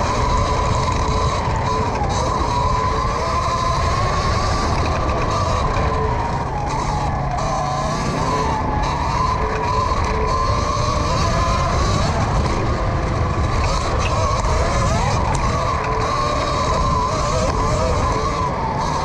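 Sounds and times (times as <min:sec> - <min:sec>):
electric motor whining: 0:00.0 - 0:19.0
wind buffeting microphone: 0:00.0 - 0:19.0.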